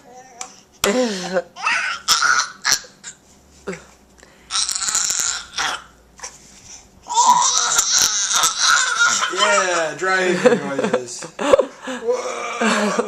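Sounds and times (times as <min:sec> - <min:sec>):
baby making driving noises: 0:01.6 - 0:03.0.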